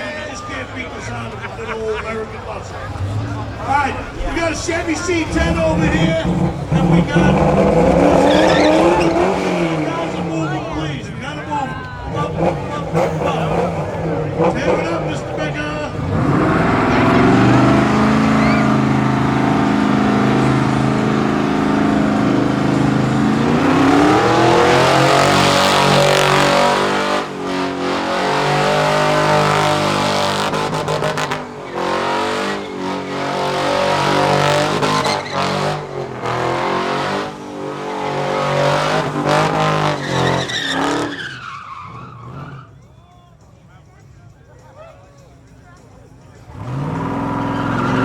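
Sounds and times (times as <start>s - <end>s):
tyres squealing: 0.0s - 43.5s, 44.6s - 48.0s
car engine revving: 0.0s - 44.2s, 45.3s - 48.0s.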